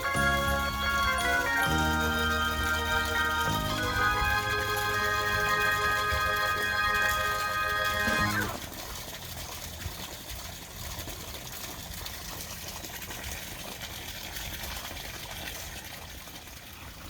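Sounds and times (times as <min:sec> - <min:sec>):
background music: 0:00.0 - 0:08.6
water trickling into pond: 0:00.0 - 0:17.0.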